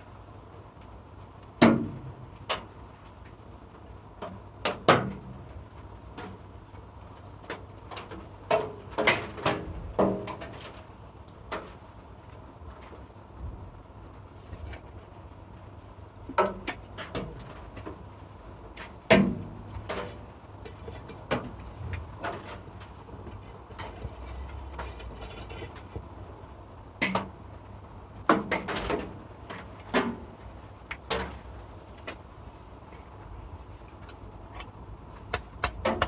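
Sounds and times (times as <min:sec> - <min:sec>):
steady low background noise: 0:00.0 - 0:36.0.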